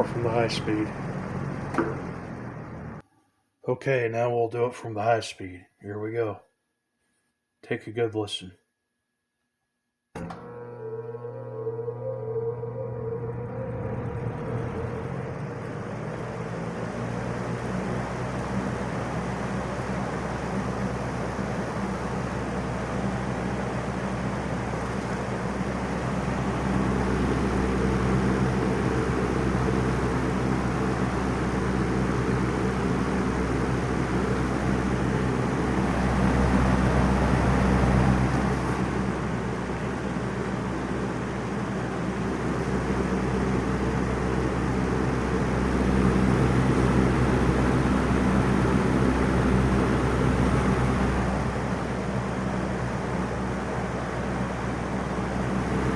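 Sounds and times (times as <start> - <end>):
box fan motor hum: 0.0 - 3.0, 10.2 - 55.9
rush of air from fan: 14.4 - 55.9.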